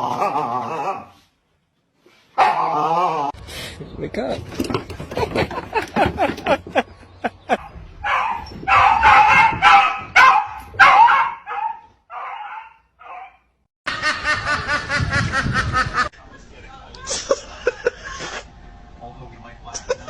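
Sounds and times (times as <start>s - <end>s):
dog barking and yipping: 2.4s - 2.8s, 7.5s - 13.5s.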